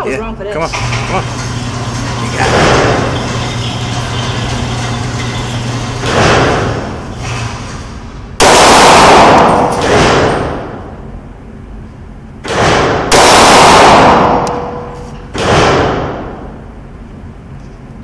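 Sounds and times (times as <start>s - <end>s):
pistol shots echoing: 8.4s - 10.9s, 12.4s - 16.5s.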